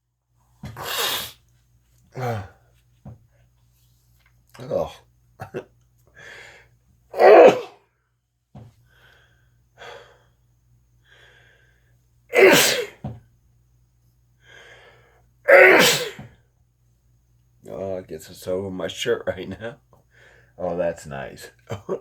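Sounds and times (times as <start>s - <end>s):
person sneezing loudly: 0.6s - 1.4s, 7.1s - 7.8s, 12.3s - 13.0s, 15.5s - 16.3s.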